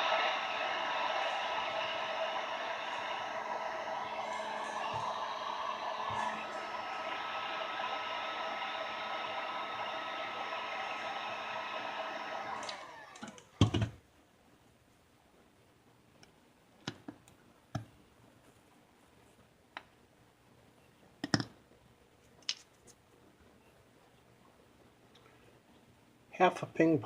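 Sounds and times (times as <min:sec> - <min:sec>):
electric tool motor running: 0:00.0 - 0:13.4.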